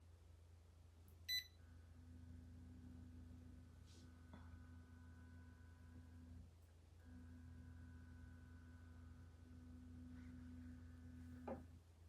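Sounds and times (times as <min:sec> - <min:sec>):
dehumidifier hum: 0:00.0 - 0:12.0
control panel beep: 0:01.3 - 0:01.6.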